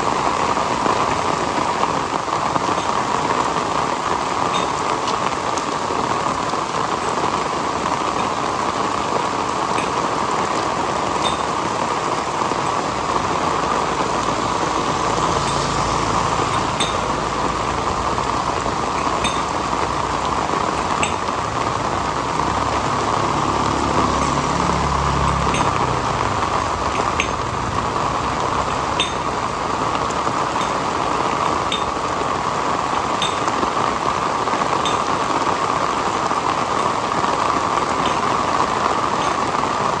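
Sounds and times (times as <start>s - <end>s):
heavy rain: 0.0s - 40.0s
drops ticking on hard surface: 9.7s - 10.0s, 11.2s - 11.6s, 16.5s - 17.5s, 18.9s - 19.8s, 20.9s - 21.7s, 25.3s - 26.0s, 26.9s - 27.8s, 28.4s - 31.0s, 31.6s - 32.1s, 33.0s - 33.6s, 34.8s - 35.2s, 38.0s - 38.4s.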